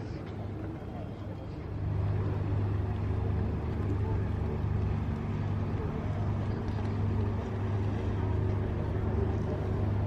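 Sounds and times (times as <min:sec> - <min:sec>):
low engine drone: 0:00.0 - 0:10.0.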